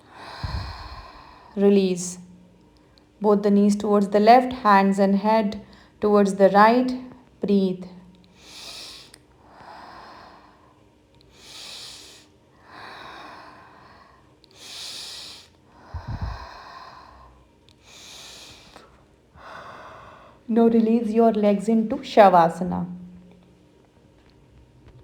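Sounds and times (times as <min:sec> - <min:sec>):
slow deep breathing: 0:00.0 - 0:01.6, 0:08.3 - 0:20.4.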